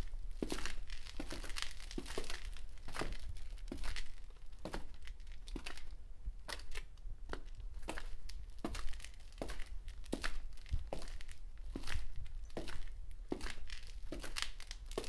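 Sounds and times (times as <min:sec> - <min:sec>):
footsteps crunching on ground: 0:07.3 - 0:15.0.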